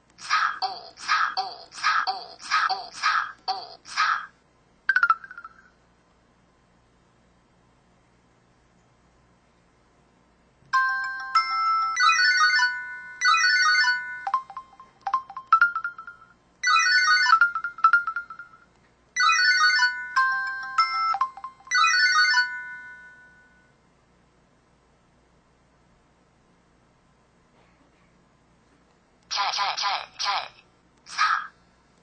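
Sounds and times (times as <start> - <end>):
phone synthesized jingles and chimes: 4.9 - 5.7, 10.8 - 23.6.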